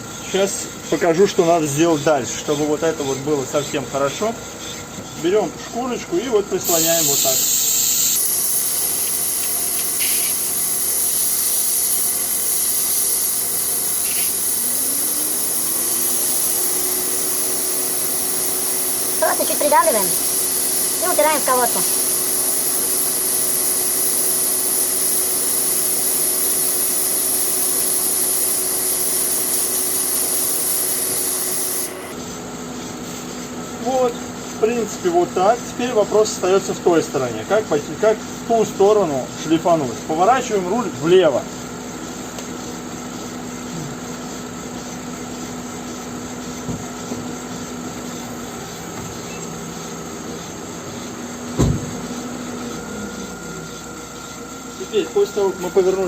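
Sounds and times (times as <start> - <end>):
spinning wheel hum: 6.6 - 32.2.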